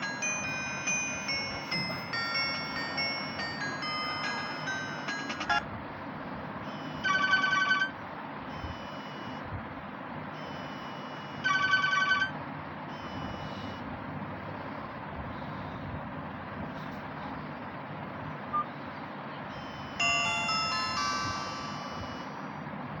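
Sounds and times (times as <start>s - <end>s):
phone ringtone warbling trills: 0.0s - 5.6s, 6.7s - 9.4s, 10.6s - 12.4s, 19.6s - 22.5s
faint beeping tones: 6.6s - 7.8s, 8.5s - 9.4s, 10.4s - 12.0s, 12.9s - 13.8s, 18.5s - 22.6s.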